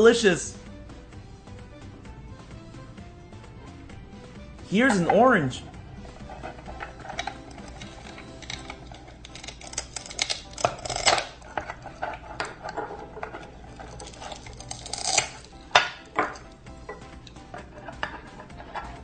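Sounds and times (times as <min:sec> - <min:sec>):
background music: 0:00.0 - 0:19.0
plastic toy knife clacking on board: 0:07.1 - 0:16.5.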